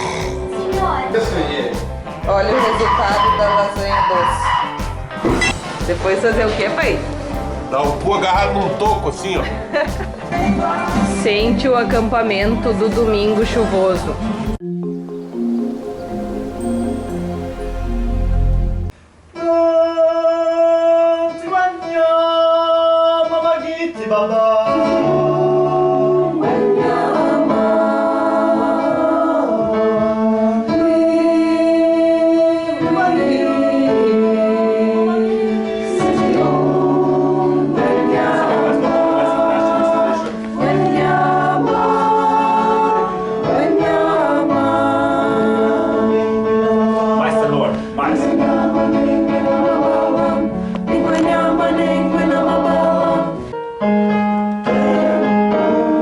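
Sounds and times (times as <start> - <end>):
choir singing: 15.3 - 20.6, 24.2 - 53.6, 54.6 - 56.0.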